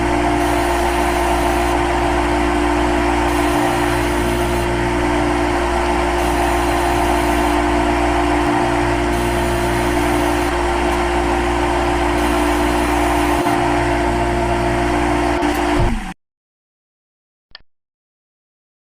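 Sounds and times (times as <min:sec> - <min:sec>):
lathe humming and whining: 0:00.0 - 0:16.1.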